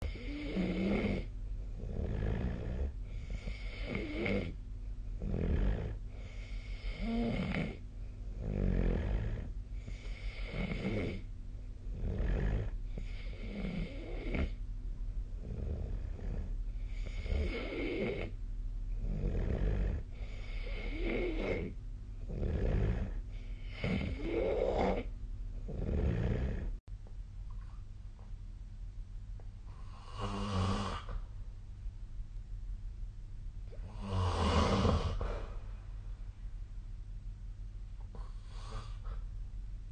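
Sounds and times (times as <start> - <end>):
person snoring: 0.0 - 4.6, 5.2 - 14.6, 15.4 - 18.4, 19.0 - 26.8, 29.7 - 31.2, 33.7 - 35.6, 38.1 - 39.2
steady low hum: 0.0 - 39.9.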